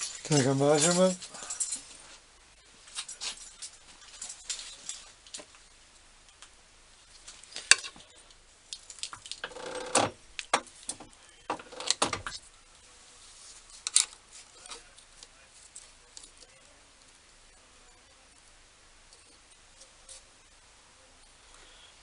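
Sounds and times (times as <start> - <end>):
metal tools clicking and clinking: 0.0 - 2.0.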